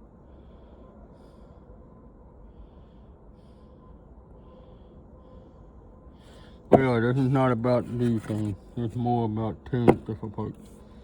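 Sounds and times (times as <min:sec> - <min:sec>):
faint steady hum: 0:00.0 - 0:11.0
man breathing: 0:00.2 - 0:06.7.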